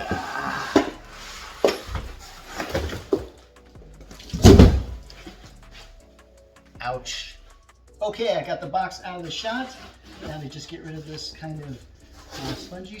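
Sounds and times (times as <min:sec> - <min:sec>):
cardboard scraping: 0:00.0 - 0:03.4, 0:04.2 - 0:05.9, 0:09.3 - 0:13.0
knocks inside cardboard box: 0:04.3 - 0:05.1
loud heavy thump: 0:04.3 - 0:05.1.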